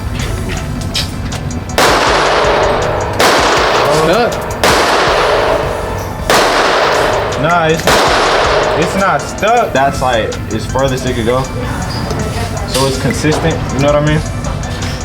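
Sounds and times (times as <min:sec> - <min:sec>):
background music: 0:00.0 - 0:15.0
pistol shots ringing out: 0:01.8 - 0:09.7.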